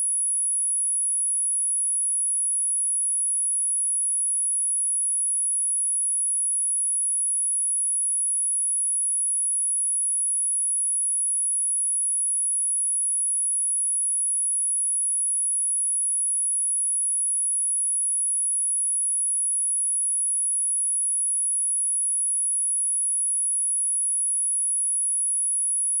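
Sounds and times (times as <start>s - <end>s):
high-pitched sine test tone: 10.6s - 26.0s.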